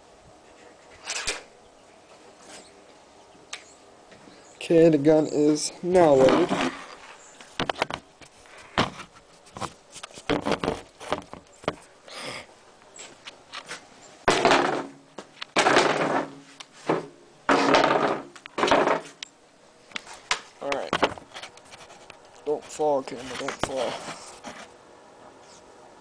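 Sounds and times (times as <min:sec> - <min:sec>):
handling noise on microphone: 0:05.9 - 0:11.9, 0:19.9 - 0:24.7
rustling: 0:05.9 - 0:24.8.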